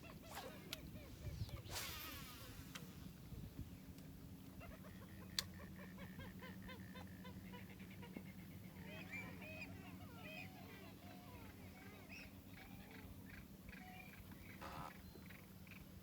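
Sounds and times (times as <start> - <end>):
steady low hum: 0.0 - 16.0
marsh bird clucking calls: 4.4 - 16.0.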